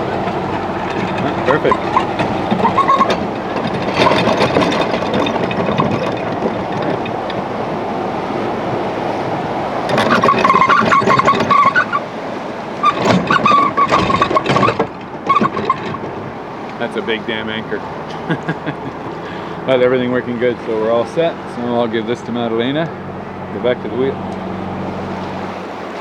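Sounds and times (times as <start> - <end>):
chain rattling: 0.0 - 7.9, 9.8 - 12.1, 12.8 - 17.2.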